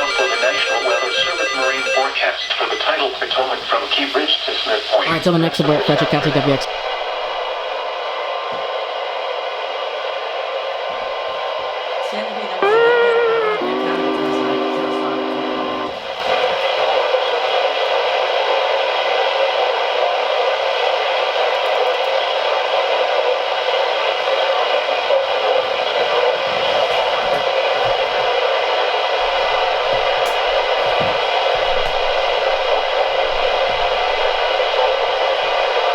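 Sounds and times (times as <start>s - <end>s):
radio static hiss: 2.2s - 7.6s
steady low tone: 12.6s - 16.0s.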